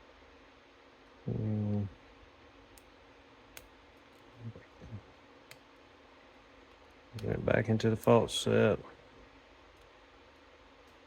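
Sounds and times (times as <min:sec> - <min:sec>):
person humming: 0:01.3 - 0:02.0.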